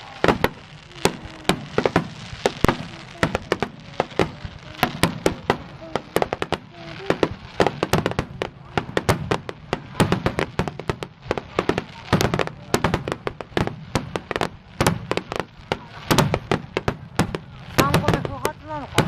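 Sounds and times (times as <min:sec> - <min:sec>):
fireworks bursting: 0:00.0 - 0:19.0.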